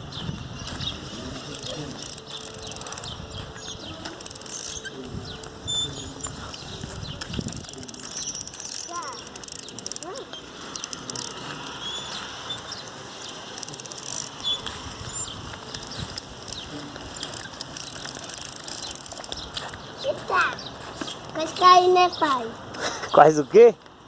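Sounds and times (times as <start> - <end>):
bicycle freewheel ratcheting: 0.0 - 0.4, 1.3 - 19.8.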